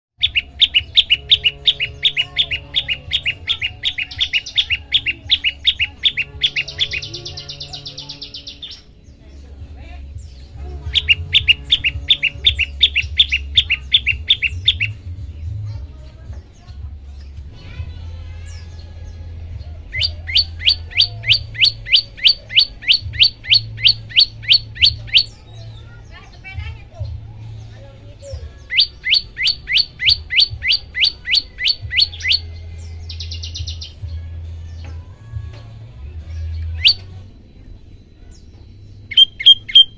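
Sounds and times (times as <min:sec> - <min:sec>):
high bird trill: 0:00.2 - 0:09.2, 0:10.2 - 0:15.9, 0:17.2 - 0:34.1, 0:36.2 - 0:39.9
bird chirping: 0:00.2 - 0:09.4, 0:10.0 - 0:17.5, 0:18.4 - 0:35.0, 0:36.2 - 0:39.9.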